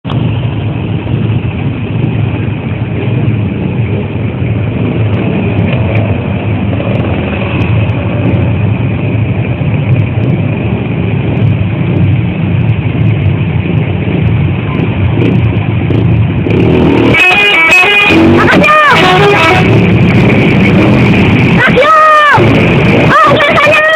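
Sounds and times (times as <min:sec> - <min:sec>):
vehicle engine and road noise: 0:00.0 - 0:23.9
multi-tone bus horn: 0:16.8 - 0:20.0.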